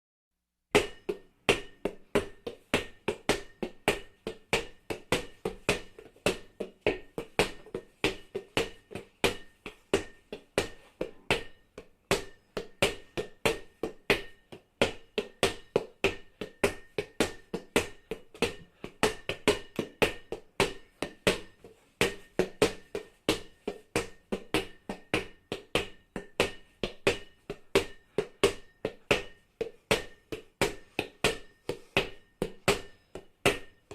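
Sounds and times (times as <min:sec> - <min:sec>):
ball bouncing: 0:00.8 - 0:33.8.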